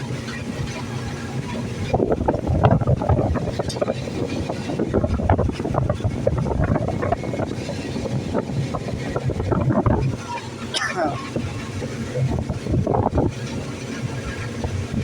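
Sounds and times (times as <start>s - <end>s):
excavator diesel engine rumble: 0.0s - 15.0s.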